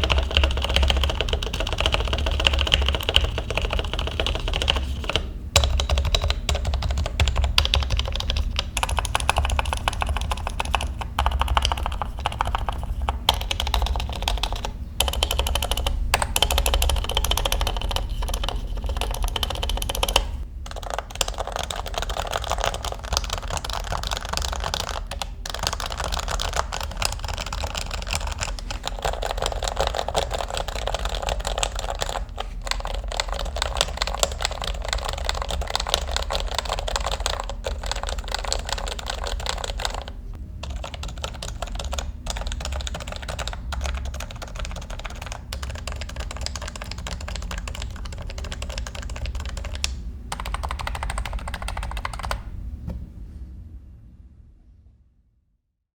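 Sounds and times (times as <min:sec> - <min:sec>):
fast keyboard typing: 0:00.0 - 0:52.6.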